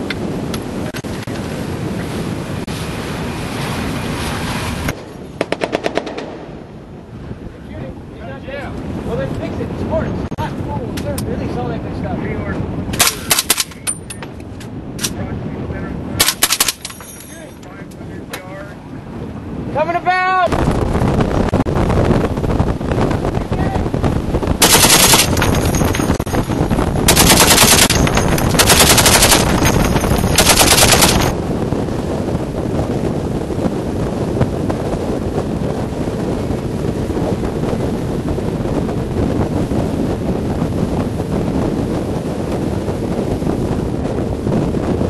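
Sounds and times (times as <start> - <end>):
wind noise: 0.0 - 45.0
boat engine rushing: 15.4 - 45.0
machine gun automatic fire: 16.2 - 16.9, 24.6 - 26.3, 27.1 - 31.3.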